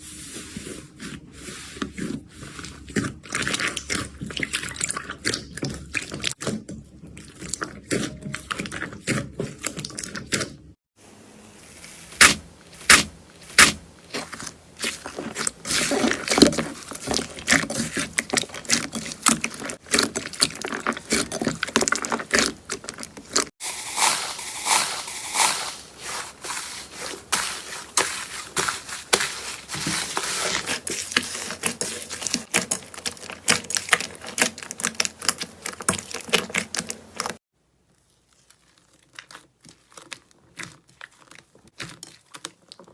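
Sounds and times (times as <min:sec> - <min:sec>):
slime squished by hand: 0:12.0 - 0:42.9.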